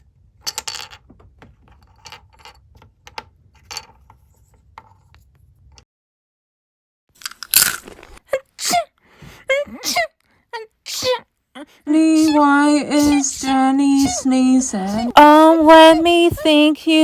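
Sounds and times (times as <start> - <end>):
sneeze sound effect: 8.4 - 8.9, 9.5 - 10.2, 10.9 - 11.2, 12.1 - 15.2.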